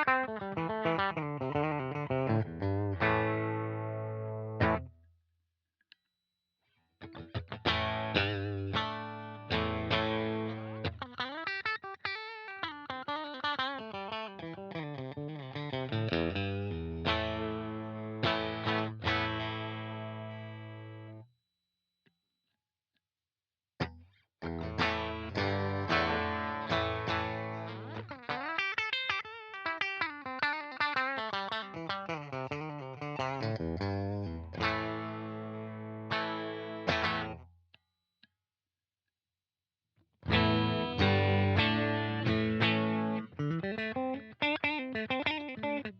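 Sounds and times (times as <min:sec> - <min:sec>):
electric guitar through amp: 0:00.0 - 0:04.9, 0:07.0 - 0:21.2, 0:23.8 - 0:37.4, 0:40.2 - 0:45.9
electric guitar lead run: 0:07.0 - 0:11.2, 0:24.5 - 0:28.8, 0:40.3 - 0:45.9
electric guitar chord ringing: 0:40.3 - 0:45.9.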